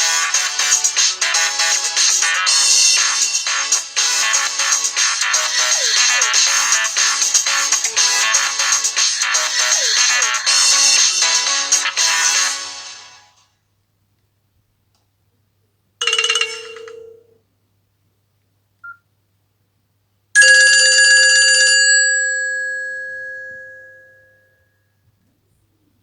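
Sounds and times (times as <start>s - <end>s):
bell-like phone chime: 16.0s - 17.4s, 20.4s - 24.7s
mobile phone chime: 20.4s - 24.6s.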